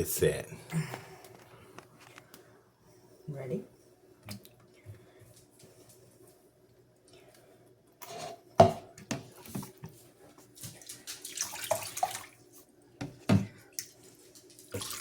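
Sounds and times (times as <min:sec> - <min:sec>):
water splashing in a sink: 0:10.6 - 0:12.6, 0:14.6 - 0:15.0.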